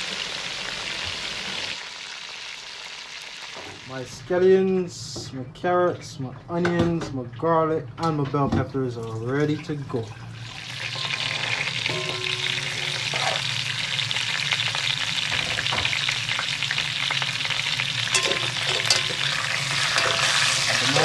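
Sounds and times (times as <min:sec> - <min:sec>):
food sizzling in a pan: 0:00.0 - 0:04.3, 0:10.3 - 0:21.0.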